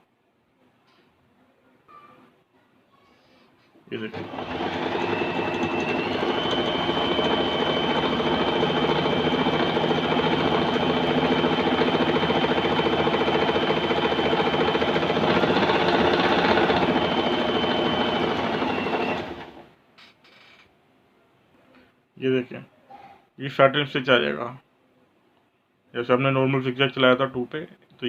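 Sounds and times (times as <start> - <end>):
sewing machine running with whine: 4.0 - 19.7.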